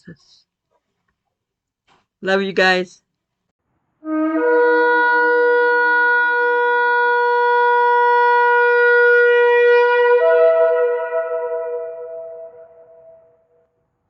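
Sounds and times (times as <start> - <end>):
shofar blast: 4.0 - 13.6.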